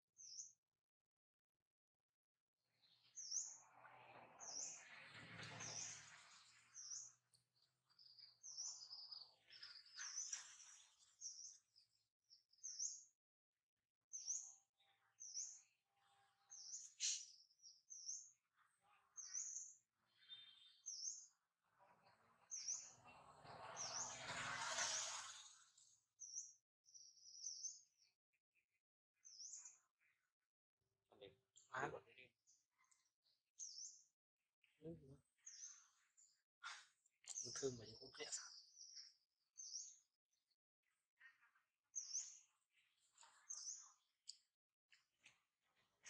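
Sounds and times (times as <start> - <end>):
small bird chirping: 16.5 - 21.4, 41.2 - 44.5.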